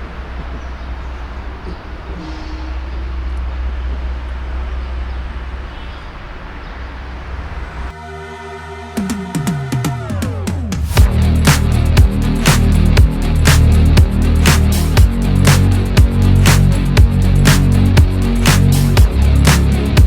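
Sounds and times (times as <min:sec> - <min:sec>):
vehicle rumble and road noise: 0:00.0 - 0:08.0
electronic music: 0:07.9 - 0:20.0.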